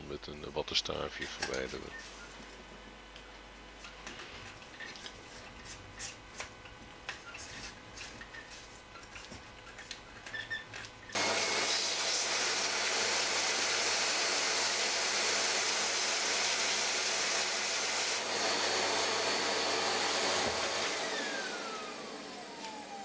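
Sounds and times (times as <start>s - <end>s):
vacuum cleaner running: 11.1s - 23.0s
vacuum motor spinning down whine: 11.2s - 23.0s.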